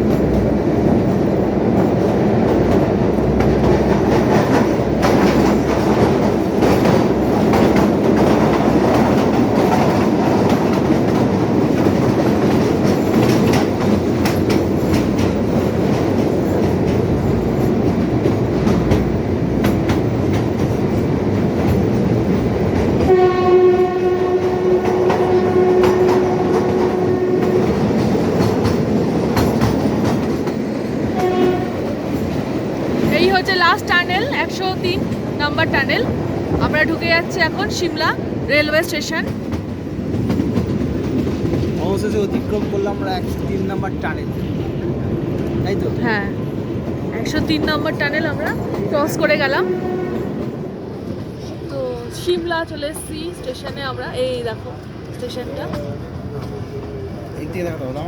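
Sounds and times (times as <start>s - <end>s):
train wheels rumbling and rattling: 0.0s - 58.0s
train horn blast: 23.0s - 28.1s, 31.1s - 32.0s, 49.4s - 50.6s.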